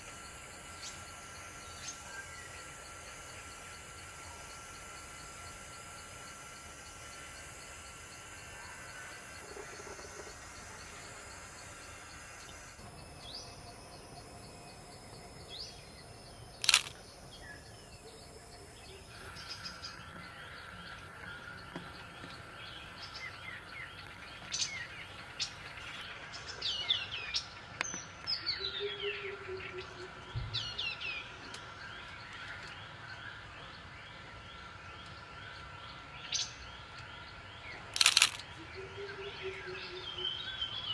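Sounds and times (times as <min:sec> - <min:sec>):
high-pitched background drone: 0:00.0 - 0:27.5
forest birds calling: 0:00.0 - 0:40.9
sharp click: 0:16.6 - 0:17.1, 0:38.0 - 0:38.5.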